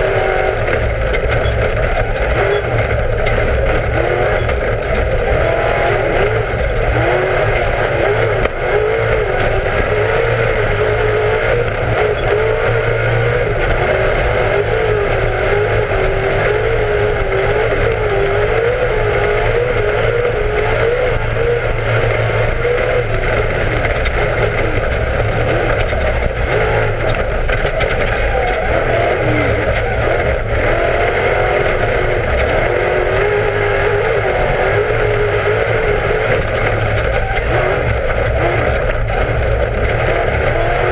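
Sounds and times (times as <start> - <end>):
race car engine running hard: 0.0 - 40.9.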